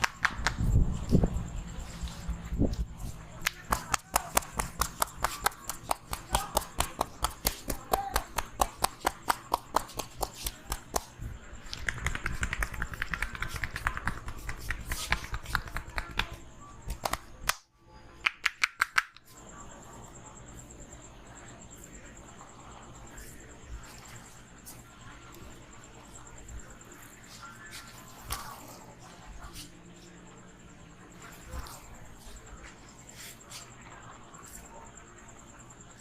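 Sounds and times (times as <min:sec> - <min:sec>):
hands clapping on a head: 0:00.0 - 0:00.7, 0:03.4 - 0:19.3.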